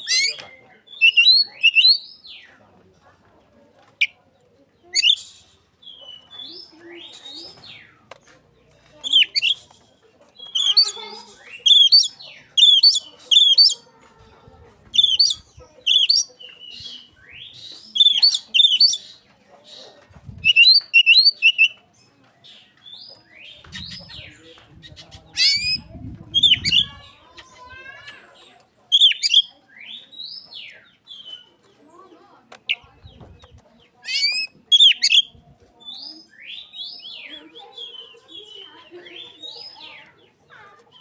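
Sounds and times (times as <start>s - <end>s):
bird singing: 0.0s - 2.5s, 10.3s - 13.8s, 15.0s - 19.2s, 20.4s - 32.0s, 32.6s - 40.4s.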